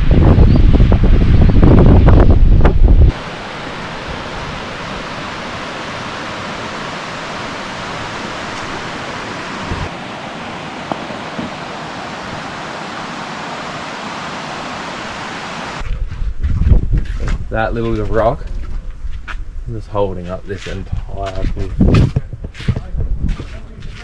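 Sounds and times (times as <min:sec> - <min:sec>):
water rushing: 0:00.0 - 0:15.8.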